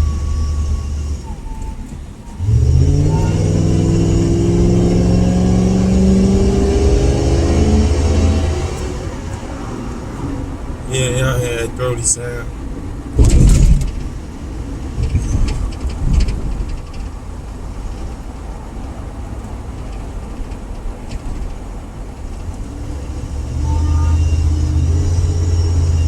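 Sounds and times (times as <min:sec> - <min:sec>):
car exhaust rumbling: 0:00.0 - 0:26.0
sharp thump: 0:13.2 - 0:14.0.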